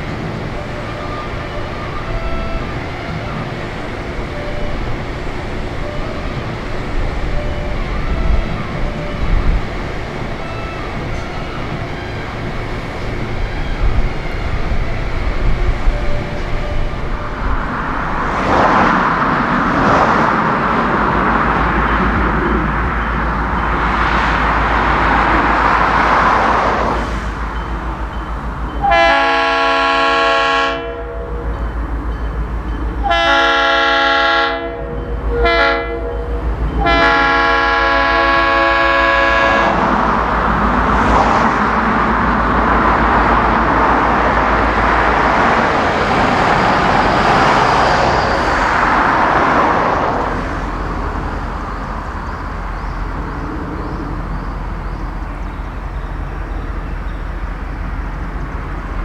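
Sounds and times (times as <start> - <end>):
locomotive air horn blasts: 0.0 - 19.9, 28.8 - 31.7, 33.0 - 41.5
moving train rumbling: 0.0 - 59.0.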